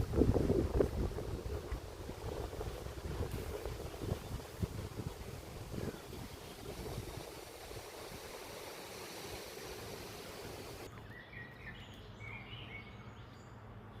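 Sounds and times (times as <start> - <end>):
rushing outdoor noise: 0.0 - 10.9.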